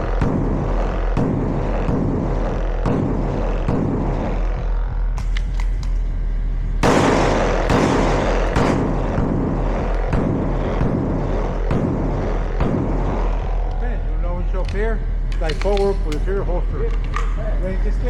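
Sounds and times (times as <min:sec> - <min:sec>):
pistol shots: 0:06.8 - 0:09.4, 0:14.7 - 0:16.2.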